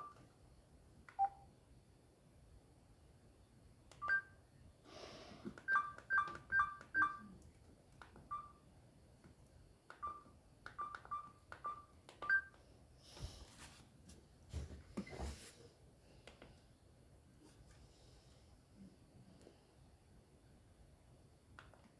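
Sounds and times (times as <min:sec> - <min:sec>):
phone keypad two-tone beeps: 0:01.2 - 0:01.4, 0:04.0 - 0:04.3, 0:05.7 - 0:07.3, 0:10.0 - 0:12.5.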